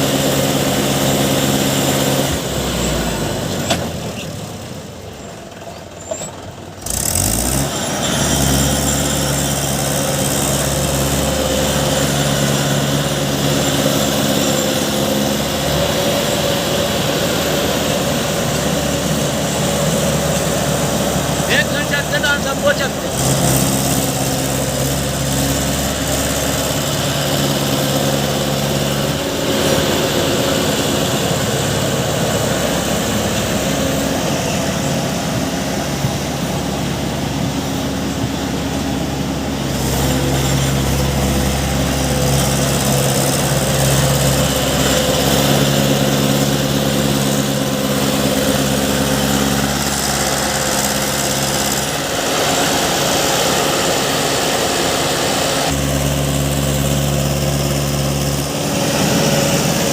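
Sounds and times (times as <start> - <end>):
diesel engines working: 0.0 - 59.9.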